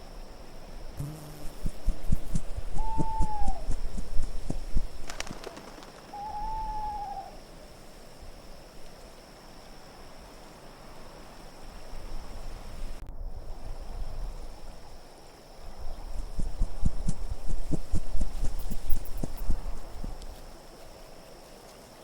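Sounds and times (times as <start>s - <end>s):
low wind rumble: 0.0s - 8.6s, 9.3s - 20.6s
owl hooting: 2.1s - 7.4s.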